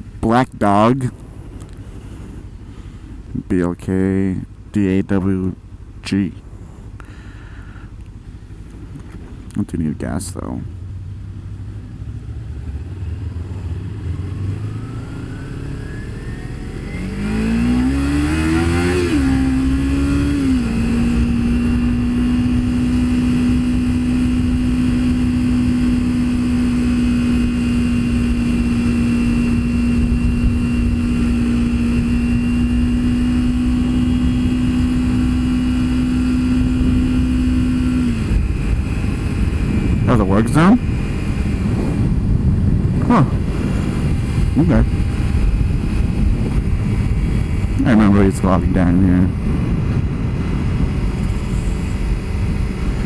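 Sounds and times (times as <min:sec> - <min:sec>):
road and wind noise: 0:00.0 - 0:53.0
motorcycle engine accelerating: 0:10.6 - 0:53.0.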